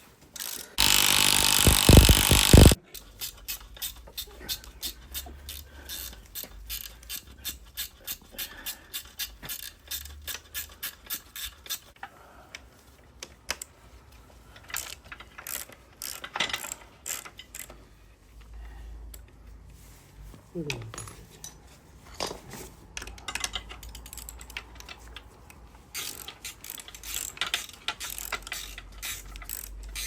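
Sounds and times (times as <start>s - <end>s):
ratchet spanner clicking: 0.4s - 4.0s, 8.9s - 11.8s, 25.9s - 30.0s.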